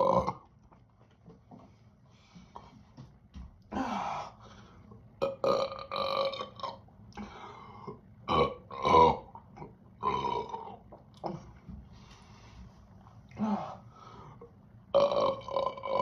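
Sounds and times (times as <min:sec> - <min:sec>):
loud burps: 0:00.0 - 0:00.5, 0:05.2 - 0:06.8, 0:08.3 - 0:09.4, 0:10.0 - 0:10.8, 0:14.9 - 0:16.0.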